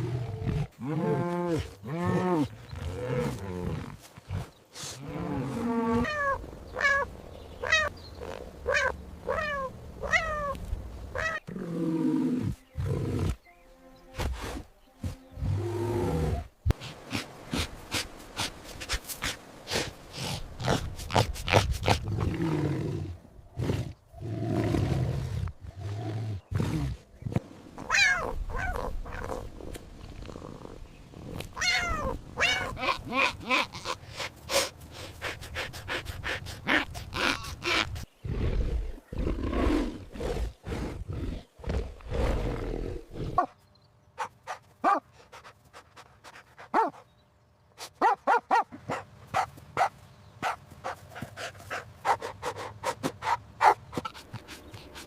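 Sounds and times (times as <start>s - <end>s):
big cat growling and roaring: 36.6s - 43.4s.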